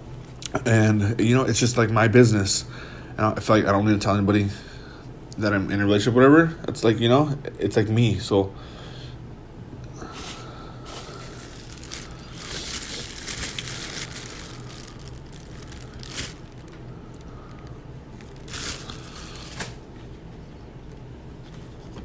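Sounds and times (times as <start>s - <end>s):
paper wrapping crinkling: 10.2s - 19.8s.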